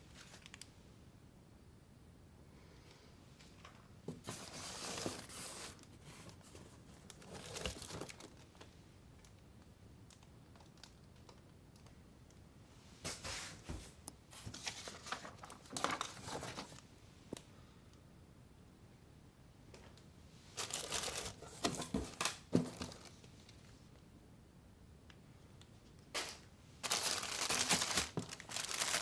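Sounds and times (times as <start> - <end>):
packaging crinkling and tearing: 4.3 - 8.7, 14.6 - 16.8, 20.6 - 23.3, 26.2 - 29.0.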